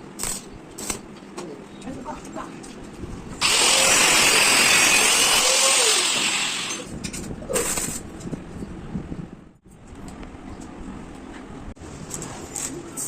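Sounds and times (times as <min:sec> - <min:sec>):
power tool working metal: 0:03.4 - 0:06.9.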